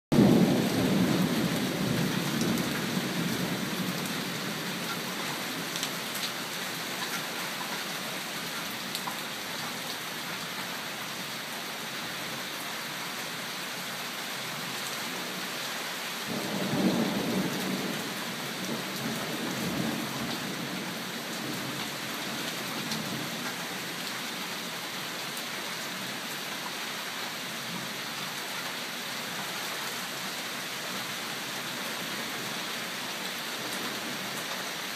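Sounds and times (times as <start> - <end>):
steady rain falling: 0.1 - 34.9
thunder rumbling: 16.3 - 21.8.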